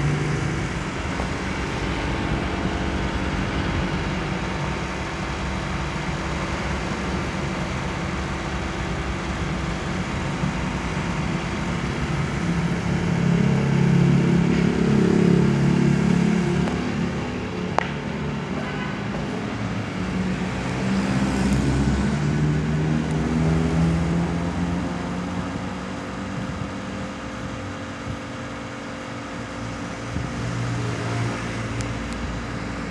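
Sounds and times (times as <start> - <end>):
air conditioner hum and whir: 0.0 - 32.9.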